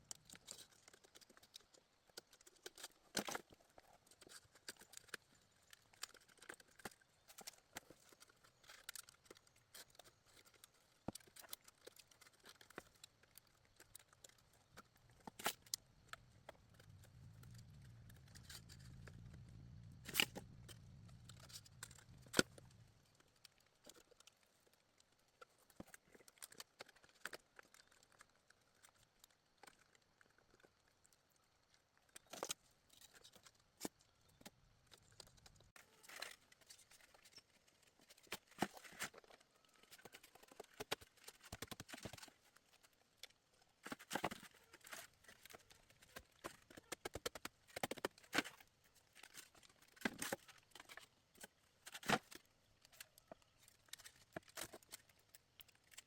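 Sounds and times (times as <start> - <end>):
sharp clicks and snaps: 0.0 - 37.4
faint rustling and crackling: 0.0 - 56.0.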